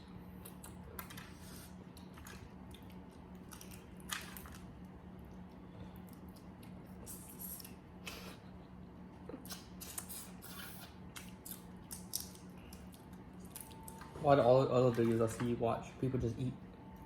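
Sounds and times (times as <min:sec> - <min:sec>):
wet squishing and chewing: 0:00.3 - 0:08.3, 0:09.3 - 0:14.1.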